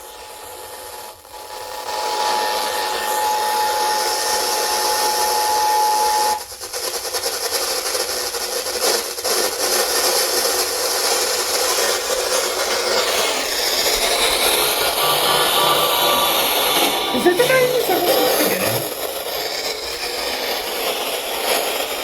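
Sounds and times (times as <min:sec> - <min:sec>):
radio static and hiss: 0:17.1 - 0:19.0
steady alert tone: 0:17.2 - 0:19.0.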